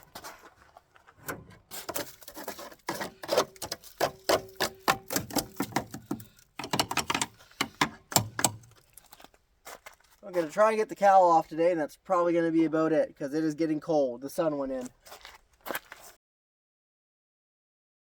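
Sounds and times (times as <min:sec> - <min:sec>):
hand tools clicking on metal: 0:01.3 - 0:08.9.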